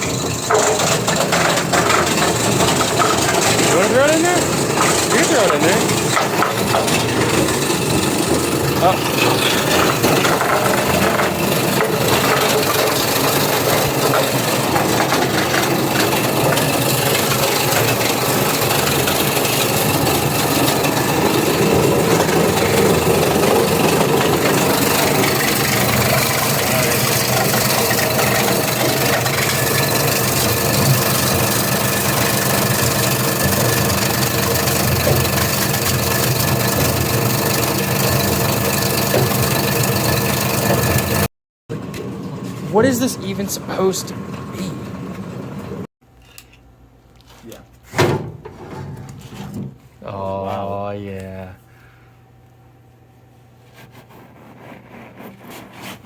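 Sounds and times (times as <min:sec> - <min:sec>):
motor hum: 0:00.0 - 0:41.3.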